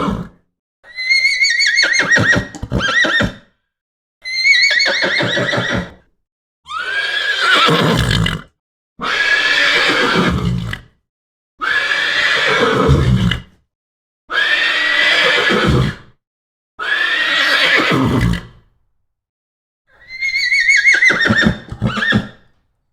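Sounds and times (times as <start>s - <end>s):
horse whinnying: 0.9s - 3.5s, 4.2s - 6.0s, 6.7s - 8.4s, 9.0s - 10.9s, 11.6s - 13.5s, 14.3s - 16.0s, 16.8s - 18.6s, 19.9s - 22.5s.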